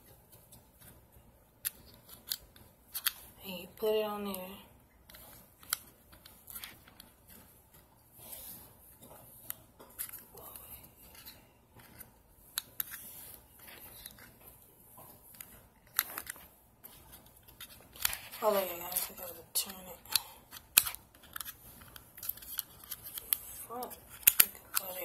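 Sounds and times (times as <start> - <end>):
cable rustling: 5.0 - 25.0.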